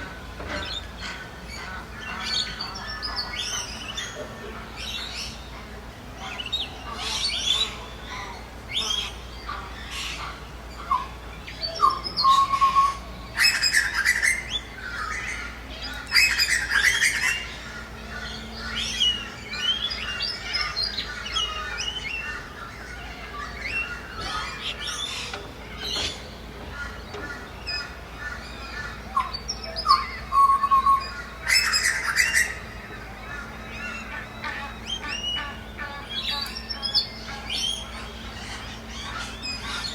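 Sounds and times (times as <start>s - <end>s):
birds chirping and whistling: 0.0s - 39.9s
harsh bird squawks: 26.7s - 39.9s.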